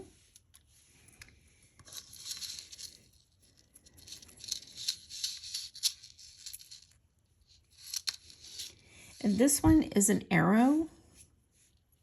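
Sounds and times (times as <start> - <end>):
jewelry crinkling and clicking: 0.3 - 9.7.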